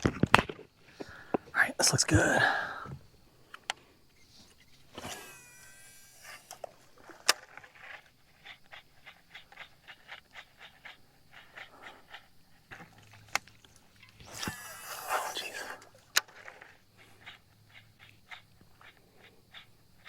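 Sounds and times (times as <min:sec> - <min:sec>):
fishing cast whirring: 0:04.2 - 0:08.8, 0:14.1 - 0:16.4
sharp reel click: 0:04.2 - 0:11.0, 0:14.0 - 0:16.4
fishing reel cranking ticks: 0:04.5 - 0:12.4, 0:13.1 - 0:20.0.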